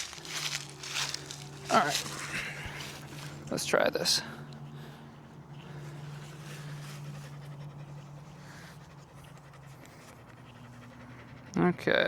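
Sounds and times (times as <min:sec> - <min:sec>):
faint low hum: 0:00.0 - 0:12.0
dog panting: 0:04.2 - 0:12.0.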